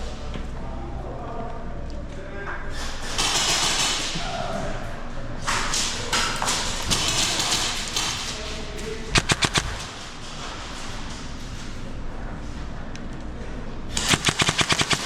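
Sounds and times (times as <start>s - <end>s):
airsoft gun shots: 9.1s - 9.9s, 14.0s - 15.0s.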